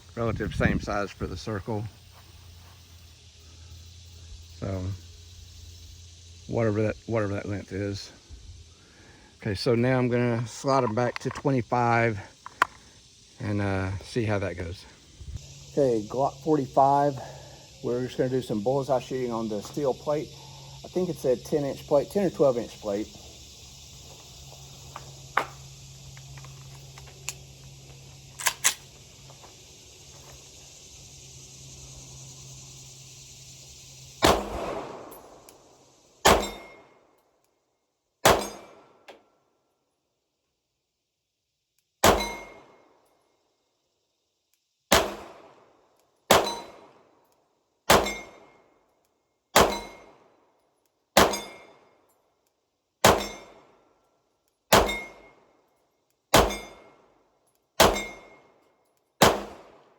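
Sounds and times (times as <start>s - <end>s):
steady background hiss: 0.0s - 58.6s
pistol shots: 34.2s - 35.4s, 36.2s - 36.7s, 38.2s - 38.8s, 42.0s - 42.6s, 44.9s - 45.6s, 46.3s - 46.9s, 47.9s - 48.3s, 49.6s - 50.1s, 51.2s - 51.6s, 53.0s - 53.6s, 54.7s - 55.2s, 56.3s - 56.8s, 57.8s - 58.2s, 59.2s - 59.8s.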